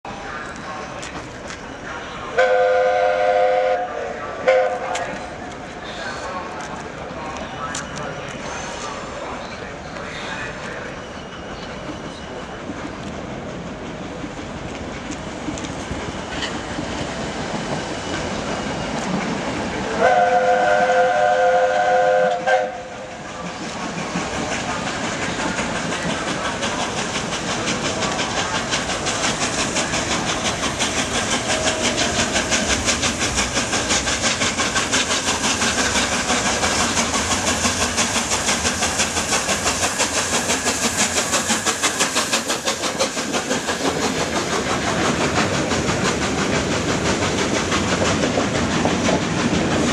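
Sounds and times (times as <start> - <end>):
rhythmic beat of passing train: 0.1 - 49.9
steam locomotive whistle: 2.3 - 5.2, 19.9 - 23.1.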